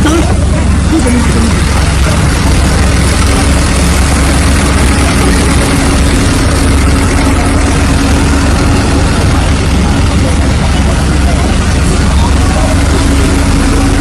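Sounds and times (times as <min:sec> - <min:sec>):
engine-like drone: 0:00.0 - 0:14.0.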